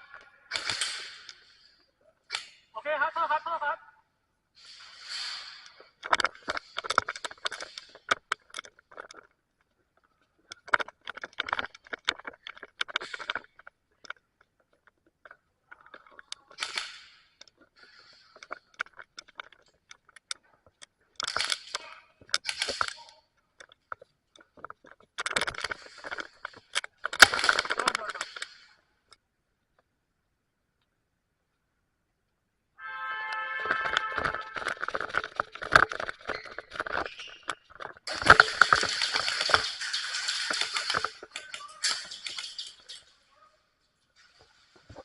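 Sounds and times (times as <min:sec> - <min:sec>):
gear rattling: 0:04.8 - 0:28.8, 0:33.9 - 0:43.3.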